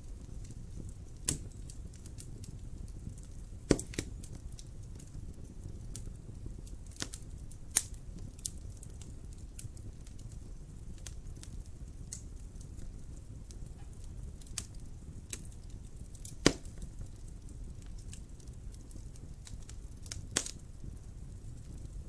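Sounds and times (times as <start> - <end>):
fire crackling: 0.0 - 22.0
fire rumbling: 0.0 - 22.0
loud pop of fire: 0.7 - 4.4, 6.8 - 8.6, 13.4 - 17.1, 18.8 - 20.6.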